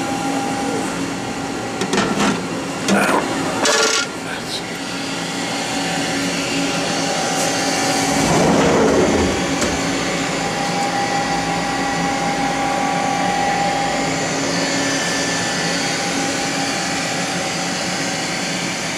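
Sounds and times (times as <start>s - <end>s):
lathe humming and whining: 0.0s - 18.9s.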